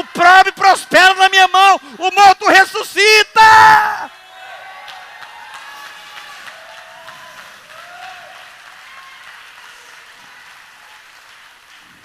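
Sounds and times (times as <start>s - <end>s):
congregation applauding: 4.4s - 12.0s.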